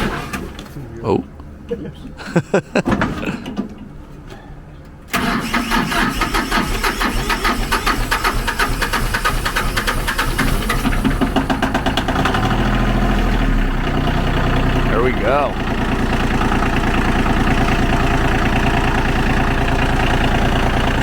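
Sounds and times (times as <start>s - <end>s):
diesel engine cranking: 0.0s - 0.8s, 4.9s - 21.0s
diesel engine idling: 5.1s - 21.0s.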